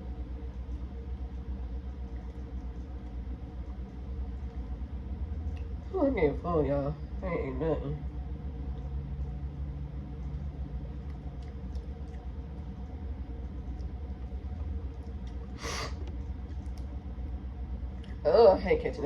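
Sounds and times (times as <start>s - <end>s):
low room hum: 0.0s - 19.0s
person sniffing: 15.6s - 16.0s.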